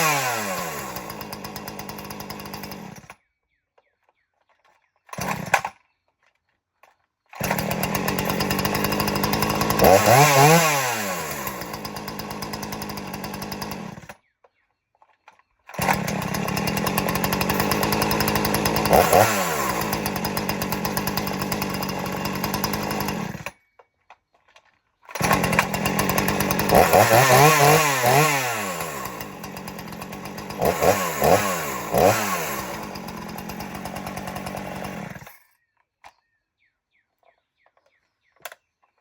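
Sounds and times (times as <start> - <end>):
chainsaw running and revving: 0.0 - 3.2, 5.1 - 5.8, 7.4 - 14.2, 15.7 - 23.6, 25.1 - 35.4.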